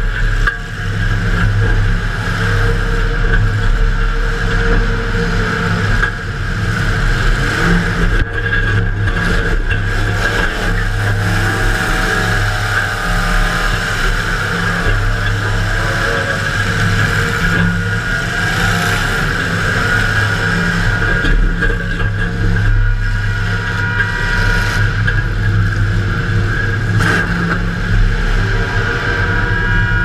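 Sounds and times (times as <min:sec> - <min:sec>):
car engine revving loud: 0:00.0 - 0:30.0.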